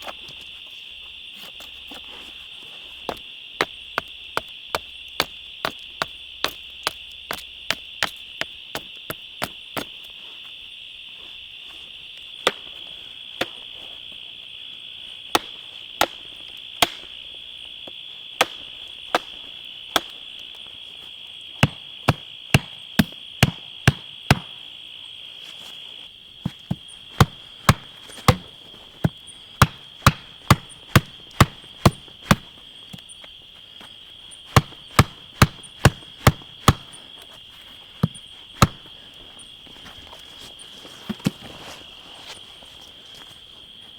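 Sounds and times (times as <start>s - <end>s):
high insect drone: 0.0s - 43.9s
blade chopping into wood: 16.8s - 17.1s, 18.4s - 20.2s, 21.6s - 24.6s, 26.4s - 33.1s, 34.5s - 37.1s, 38.0s - 39.0s.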